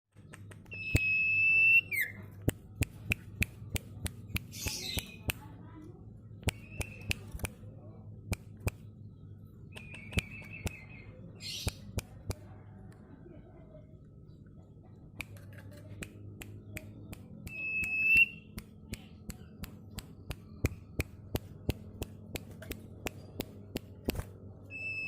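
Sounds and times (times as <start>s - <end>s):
bird snapping clicks: 0.2s - 1.1s, 2.4s - 5.5s, 6.4s - 7.6s, 8.3s - 8.9s, 9.7s - 10.8s, 15.2s - 24.4s
steady low hum: 0.2s - 25.0s
bird high whistle: 0.7s - 2.2s, 17.5s - 18.4s, 24.7s - 25.0s
bird raspy chatter: 4.4s - 5.6s.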